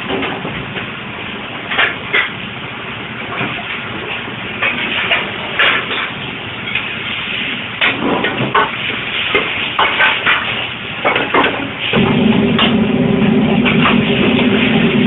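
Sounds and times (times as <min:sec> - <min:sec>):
food sizzling in a wok: 0:08.7 - 0:11.0, 0:11.7 - 0:15.0.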